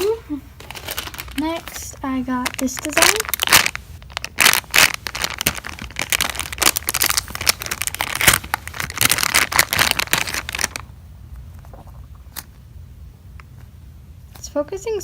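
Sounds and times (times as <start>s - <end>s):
plastic packaging crinkling: 0.0s - 10.9s.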